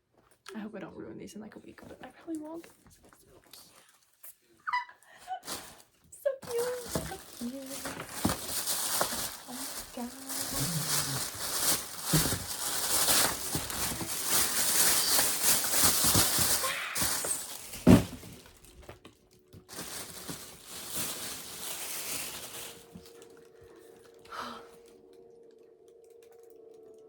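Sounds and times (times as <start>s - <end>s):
packaging crinkling and rustling: 5.4s - 27.0s.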